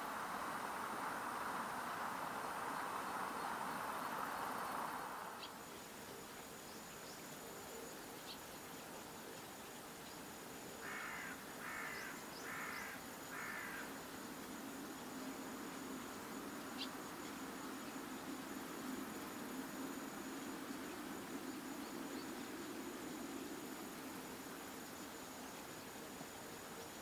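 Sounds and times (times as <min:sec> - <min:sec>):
rushing noise: 0:00.0 - 0:05.4
high insect buzz: 0:00.0 - 0:08.4, 0:10.0 - 0:27.0
crow cawing: 0:10.8 - 0:13.9.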